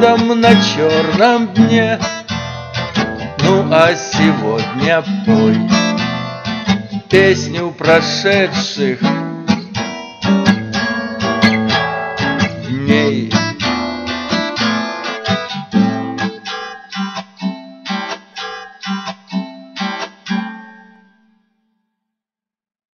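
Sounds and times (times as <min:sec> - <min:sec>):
acoustic guitar playing: 0:00.0 - 0:21.5.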